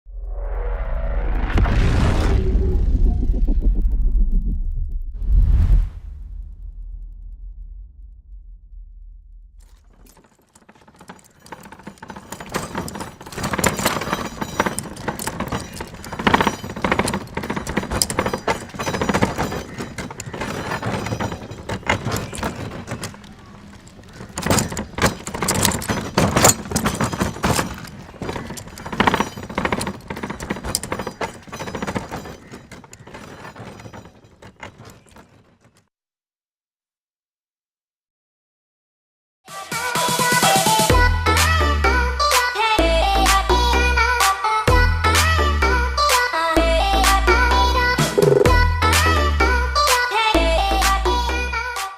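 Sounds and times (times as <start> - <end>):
cart wheels clattering on road: 9.6 - 35.9, 42.2 - 51.9.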